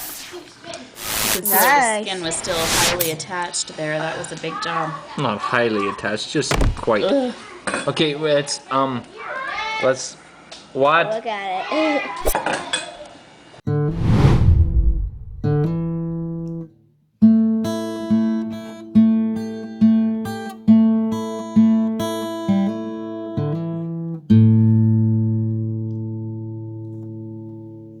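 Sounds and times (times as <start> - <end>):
guitar plucking and chords: 15.4 - 16.7.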